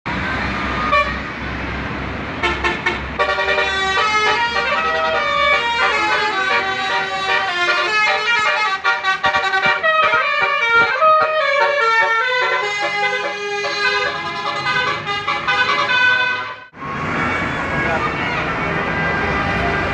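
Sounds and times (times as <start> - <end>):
bus multi-tone horn tune: 0.7 - 1.3, 2.4 - 19.9.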